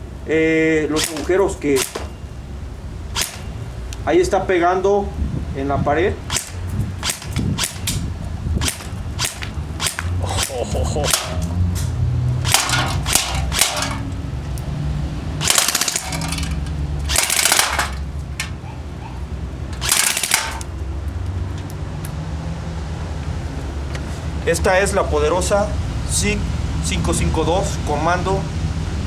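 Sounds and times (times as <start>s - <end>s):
airsoft gun full-auto bursts: 1.0s - 2.1s, 3.1s - 3.6s, 6.3s - 11.7s, 12.4s - 14.1s, 15.4s - 18.1s, 19.8s - 20.7s
airsoft gun single shots: 1.0s - 2.2s, 3.2s - 3.5s, 6.3s - 11.6s, 12.4s - 14.1s, 15.4s - 18.0s, 19.8s - 20.7s.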